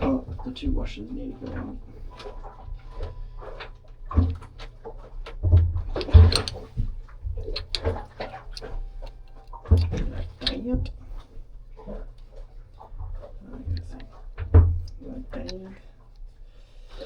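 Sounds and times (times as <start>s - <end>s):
metal fittings and tools clinking: 5.8s - 11.3s, 13.2s - 15.8s.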